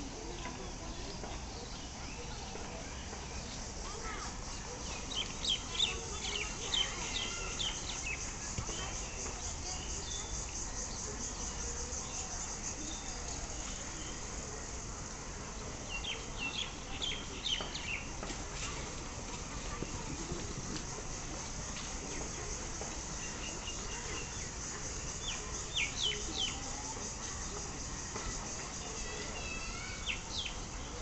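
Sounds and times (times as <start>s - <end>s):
insects trilling: 0.0s - 18.2s, 19.0s - 31.0s
birds chirping: 15.8s - 18.2s, 21.8s - 26.9s.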